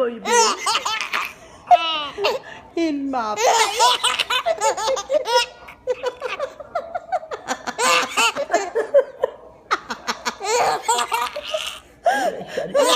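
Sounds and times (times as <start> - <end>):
high-pitched laughter: 3.4 - 12.9.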